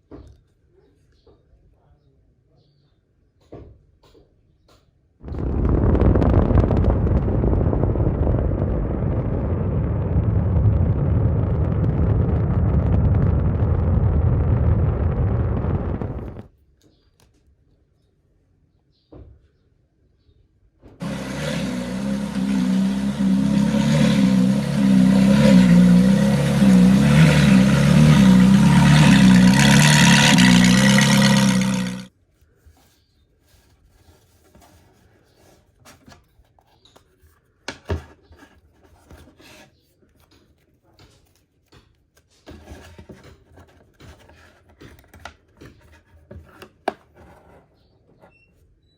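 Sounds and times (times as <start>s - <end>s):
loud motor running: 5.3s - 16.5s, 21.0s - 32.1s.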